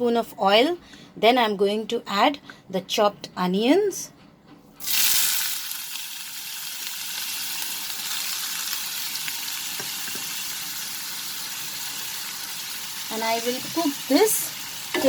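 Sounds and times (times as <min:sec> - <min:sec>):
onions sizzling in hot oil: 0:04.8 - 0:15.0.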